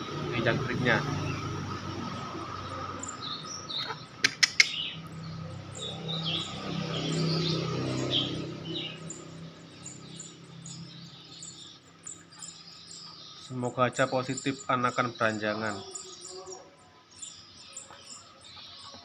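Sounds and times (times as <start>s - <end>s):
nestling birds begging chirps: 0.0s - 19.0s
sharp clicks: 4.2s - 5.1s.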